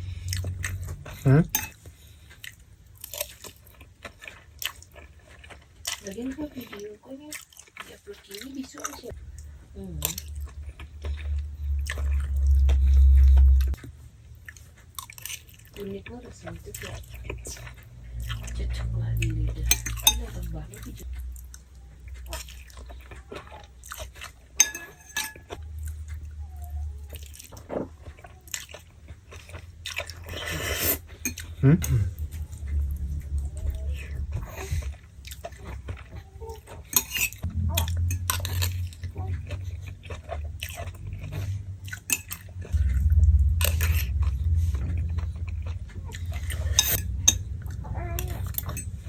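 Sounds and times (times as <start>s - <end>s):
person chewing noodles: 0.0s - 49.0s
low rumble: 9.2s - 14.4s, 31.4s - 35.9s, 37.4s - 49.0s
spoon clinking on plate: 24.6s - 25.4s
person humming hmm: 31.6s - 32.2s.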